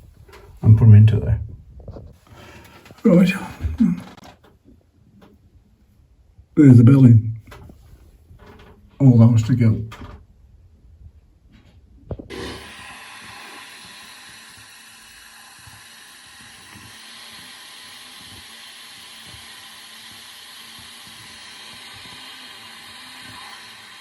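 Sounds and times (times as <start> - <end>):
steady hiss: 12.3 - 24.0.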